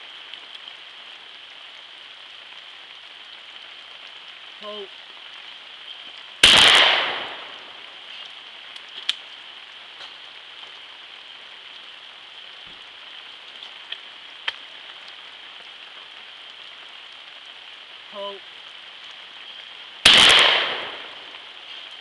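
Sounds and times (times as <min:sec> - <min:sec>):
steady background hiss: 0:00.0 - 0:22.0
shotgun blast: 0:06.4 - 0:07.5, 0:20.0 - 0:21.2
faint clicks: 0:08.2 - 0:09.3, 0:13.5 - 0:15.2.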